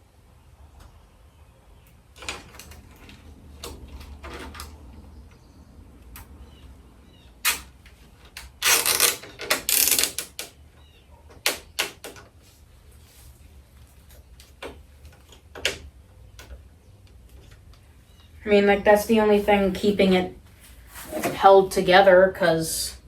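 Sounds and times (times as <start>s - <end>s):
plastic parts clicking and knocking: 2.1s - 5.4s, 7.5s - 10.6s, 11.3s - 12.4s, 14.1s - 17.8s
zip ties ratcheting tight: 8.6s - 10.5s.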